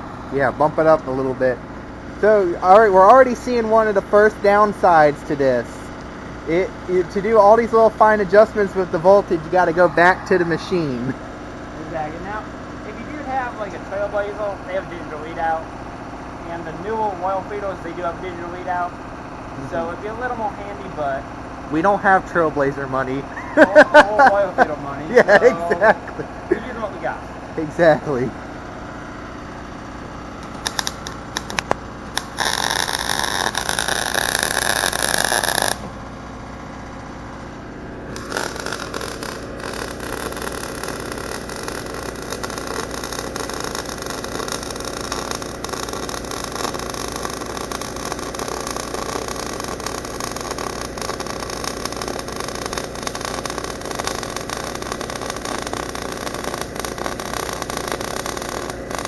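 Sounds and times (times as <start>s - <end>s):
welding arc crackling: 0.0s - 15.7s, 29.4s - 37.4s, 38.1s - 59.0s
welder engine running: 0.0s - 59.0s.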